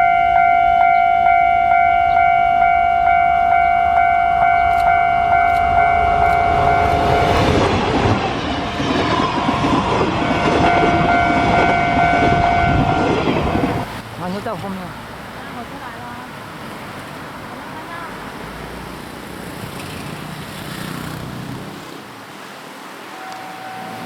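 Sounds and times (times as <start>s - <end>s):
level-crossing warning bell: 0.0s - 8.2s, 8.8s - 13.9s, 23.0s - 24.0s
train wheel and rail noise: 0.0s - 24.0s.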